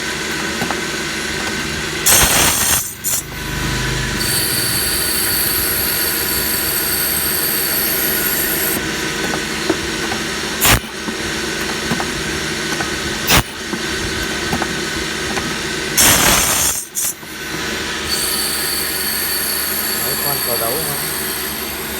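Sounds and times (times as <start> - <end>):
drilling machine humming: 0.0 - 21.9
high steady squeal: 2.0 - 8.8, 16.0 - 21.9.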